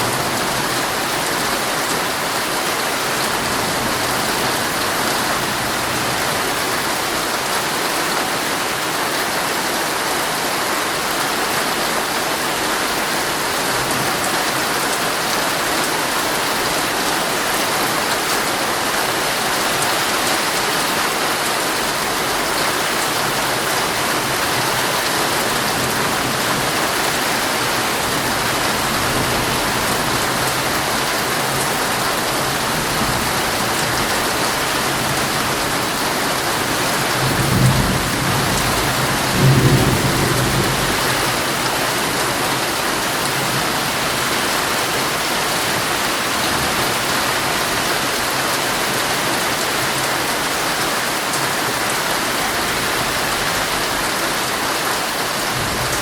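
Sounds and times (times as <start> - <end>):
heavy rain drumming on a tent: 0.0 - 56.0.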